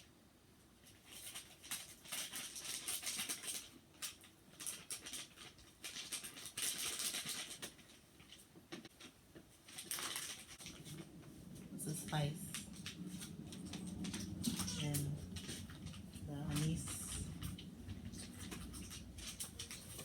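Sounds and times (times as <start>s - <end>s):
dry spices rustling: 9.8s - 20.0s.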